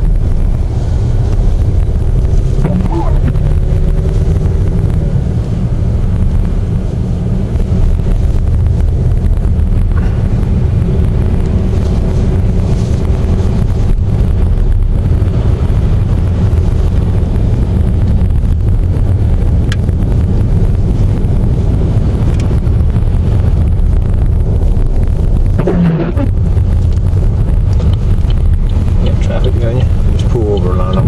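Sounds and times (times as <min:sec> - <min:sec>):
vehicle driving rumble: 0:00.0 - 0:31.0
faint hum: 0:01.4 - 0:05.3.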